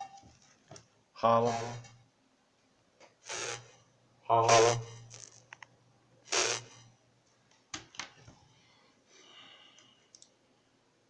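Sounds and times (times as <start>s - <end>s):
harsh distorted voice burst: 1.2s - 1.9s, 4.3s - 5.2s, 6.3s - 6.8s.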